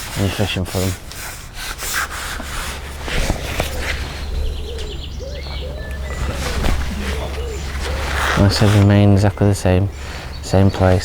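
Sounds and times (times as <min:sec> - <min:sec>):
birds calling: 0:00.0 - 0:11.0
steady low rumble: 0:02.3 - 0:11.0.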